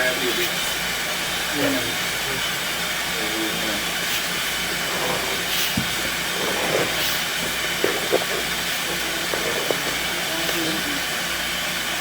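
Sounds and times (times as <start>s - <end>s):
water hissing into drain: 0.0s - 12.0s.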